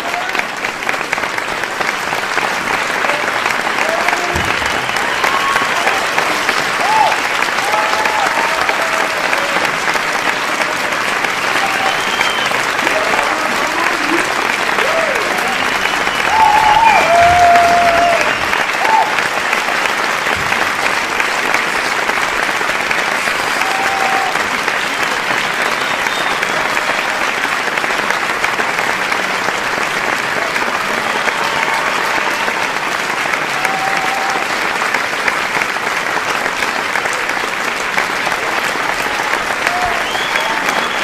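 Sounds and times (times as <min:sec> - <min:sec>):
audience applauding: 0:00.0 - 0:41.0
calls from crowd: 0:00.0 - 0:41.0.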